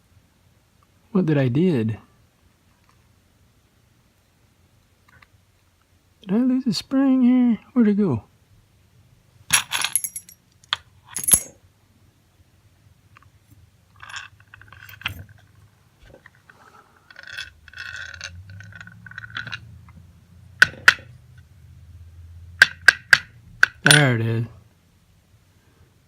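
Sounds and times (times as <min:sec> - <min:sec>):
padlock parts clinking and scraping: 0:09.5 - 0:11.6, 0:13.9 - 0:19.7, 0:20.6 - 0:21.1, 0:22.6 - 0:24.1.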